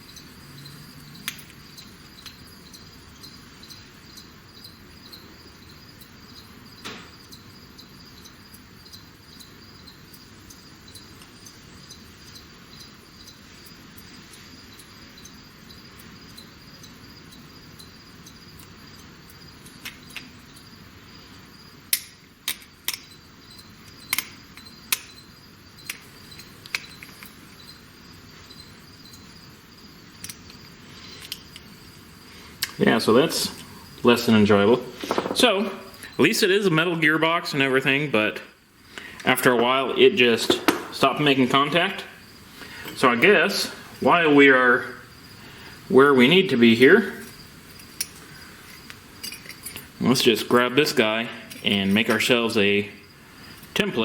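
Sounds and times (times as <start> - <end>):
crickets chirping: 0.0 - 54.0
metallic clicks of small parts: 0.1 - 20.7, 21.9 - 27.7, 28.5 - 29.4, 30.1 - 31.8, 47.2 - 50.6, 51.5 - 52.4.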